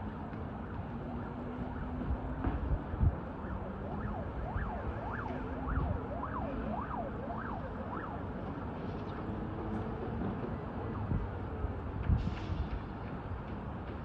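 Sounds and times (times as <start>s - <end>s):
city traffic hum: 0.0s - 14.0s
emergency vehicle siren wailing: 0.1s - 8.9s.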